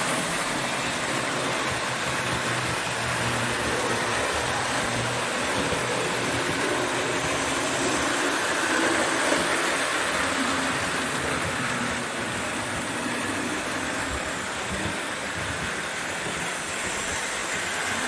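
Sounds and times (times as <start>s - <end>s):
toy train motor hum: 0.0s - 18.0s
wheels rumbling on rail: 0.0s - 18.0s.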